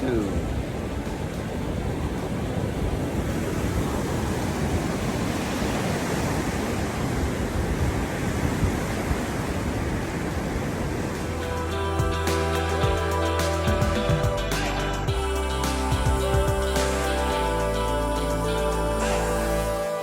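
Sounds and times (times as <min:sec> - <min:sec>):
wind on microphone: 0:00.0 - 0:11.6
ocean surf washing on shore: 0:00.0 - 0:14.8
music: 0:11.2 - 0:20.0.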